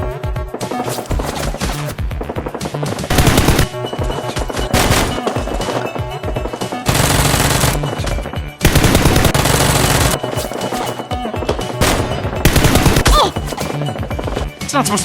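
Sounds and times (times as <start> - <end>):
background music: 0.0 - 15.0
rapid automatic gunfire: 2.9 - 10.9, 11.8 - 13.2.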